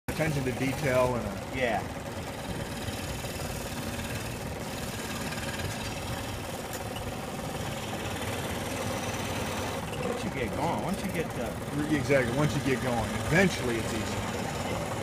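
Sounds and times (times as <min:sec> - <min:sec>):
scroll saw cutting wood: 0:02.4 - 0:06.9, 0:07.6 - 0:15.0.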